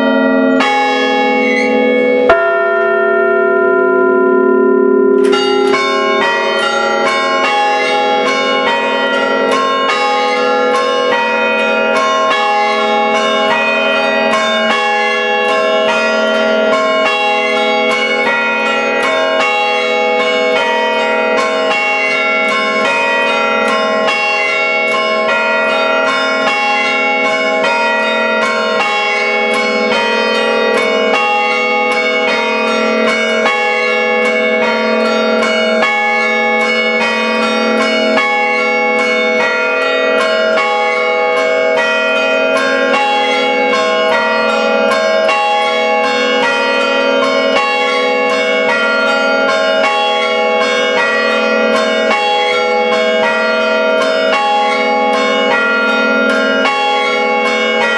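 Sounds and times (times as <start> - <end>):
church bells ringing: 0.0 - 57.9.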